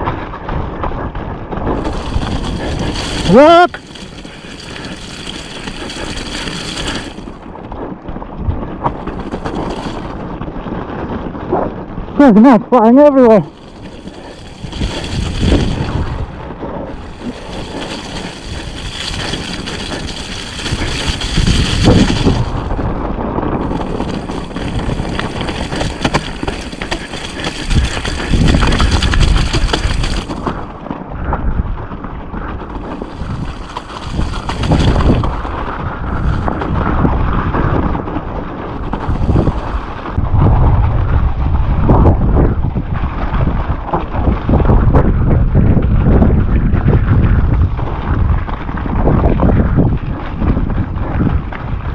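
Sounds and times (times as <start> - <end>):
bike tyres rumbling over rock: 0.0 - 51.9
wind buffeting microphone: 0.0 - 51.9
bike clattering: 1.5 - 11.8, 13.5 - 40.1.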